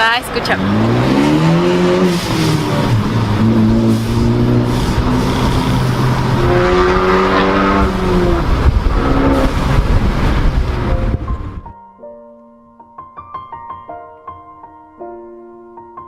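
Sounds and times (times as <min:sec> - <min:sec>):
car engine revving loudly: 0:00.3 - 0:11.6.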